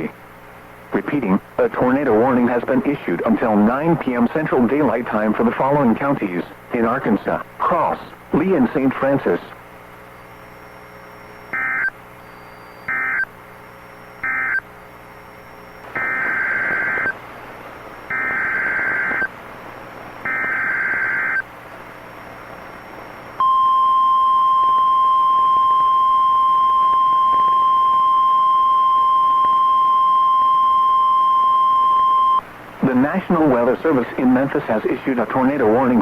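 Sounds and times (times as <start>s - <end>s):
warbling data tone bursts: 10.4s - 17.2s, 17.8s - 19.3s, 20.2s - 21.4s
steady alarm tone: 11.2s - 13.3s, 14.0s - 14.7s, 15.3s - 17.2s, 18.0s - 19.3s, 20.2s - 21.4s.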